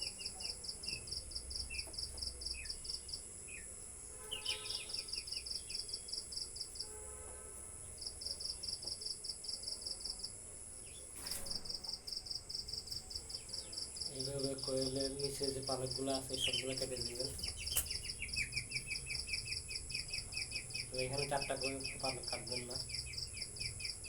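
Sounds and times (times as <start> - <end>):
falling bird chirps: 0.0 - 6.8, 16.0 - 24.0
crickets trilling: 0.0 - 24.0
high insect whine: 0.0 - 24.0.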